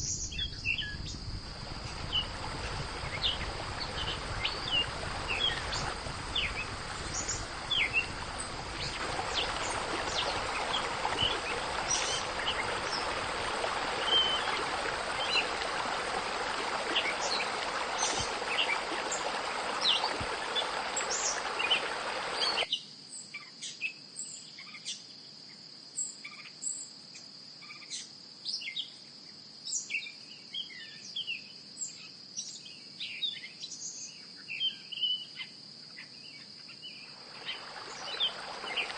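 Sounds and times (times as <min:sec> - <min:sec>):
even hiss: 0:00.0 - 0:22.6, 0:37.2 - 0:38.9
high insect drone: 0:00.0 - 0:22.6
small birds chirping: 0:00.0 - 0:22.7, 0:36.7 - 0:38.9.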